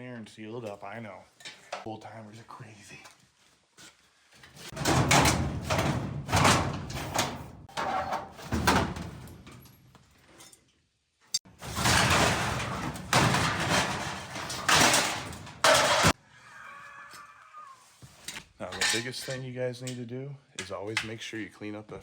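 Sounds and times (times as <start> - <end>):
metal equipment scraping and knocking: 4.6 - 9.7, 11.5 - 16.2.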